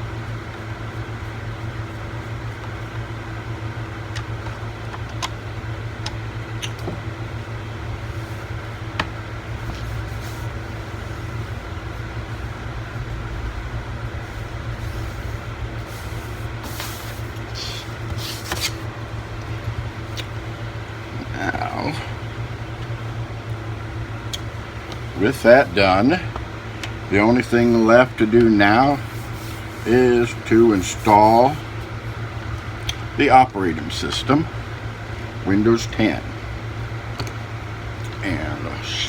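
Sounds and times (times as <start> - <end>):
steady low hum: 0.0 - 39.0
scraping rustles: 8.0 - 13.1, 14.0 - 19.7, 28.8 - 32.0.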